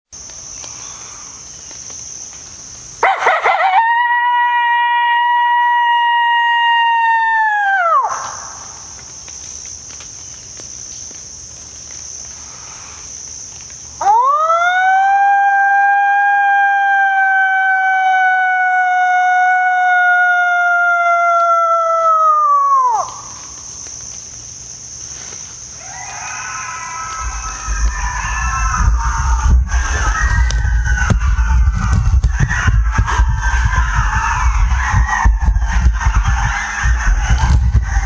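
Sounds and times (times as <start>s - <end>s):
high insect buzz: 0.2s - 3.6s, 8.0s - 14.1s, 22.9s - 32.0s
coyotes howling and yipping: 3.0s - 8.8s, 14.0s - 23.8s, 25.7s - 38.0s.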